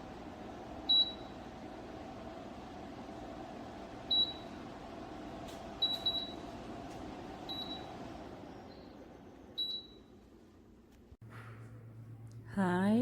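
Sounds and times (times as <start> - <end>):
fan airflow rushing: 0.0 - 9.3
fan control panel beeps: 0.8 - 1.4, 4.1 - 4.6, 5.8 - 6.5, 7.4 - 8.0, 8.6 - 10.1.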